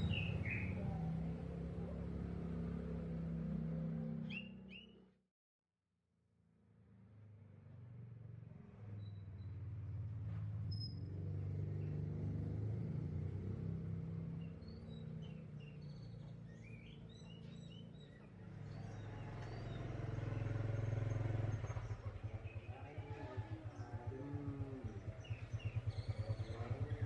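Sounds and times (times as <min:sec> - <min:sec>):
faint high bird chirps: 0:00.0 - 0:00.8, 0:04.2 - 0:05.0, 0:10.7 - 0:11.1, 0:14.4 - 0:22.7
vehicle engine running: 0:00.0 - 0:04.9, 0:07.4 - 0:27.0.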